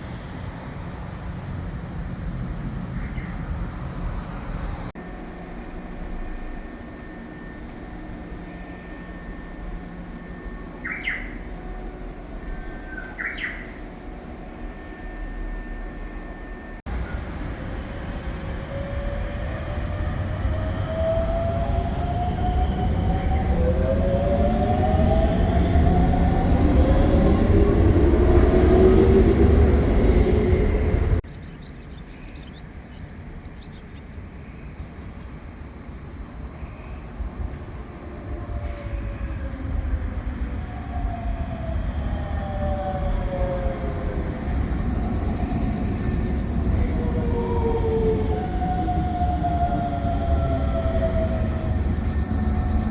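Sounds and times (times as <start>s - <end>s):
train rail rumble: 0.0s - 52.9s
traction motor whine: 4.6s - 16.9s, 18.1s - 31.2s, 40.6s - 52.9s.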